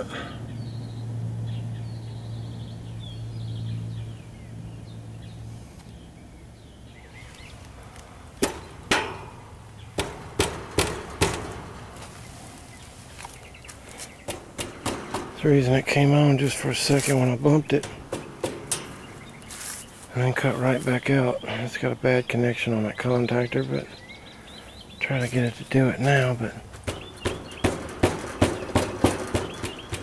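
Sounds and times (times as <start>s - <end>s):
air conditioning unit humming: 0.0s - 30.0s
sharp metallic clicks and knocks: 8.4s - 12.2s, 14.1s - 19.5s, 26.8s - 30.0s.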